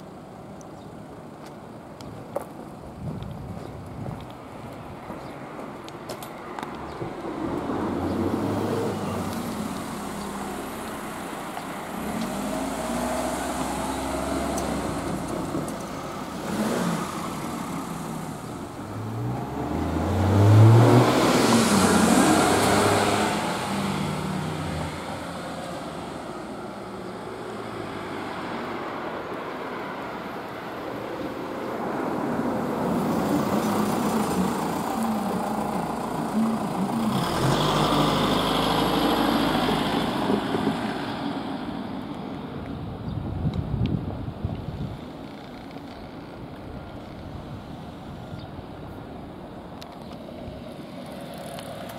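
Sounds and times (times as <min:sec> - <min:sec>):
cars driving past: 0:05.2 - 0:43.3.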